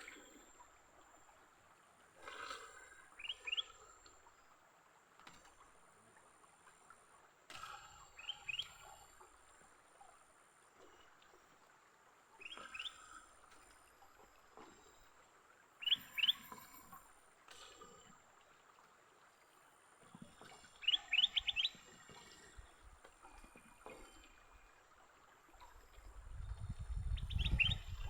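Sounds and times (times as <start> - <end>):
bird calling with chirps: 15.8 - 16.7, 20.8 - 21.8, 27.2 - 28.0.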